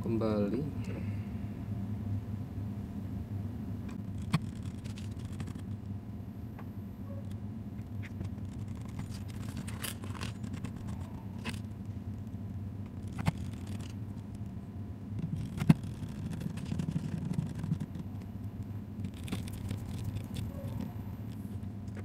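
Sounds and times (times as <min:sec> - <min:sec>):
steady low hum: 0:00.0 - 0:22.0
plastic and metal scraping: 0:07.9 - 0:11.7, 0:12.9 - 0:14.2, 0:15.2 - 0:18.2, 0:19.0 - 0:21.0.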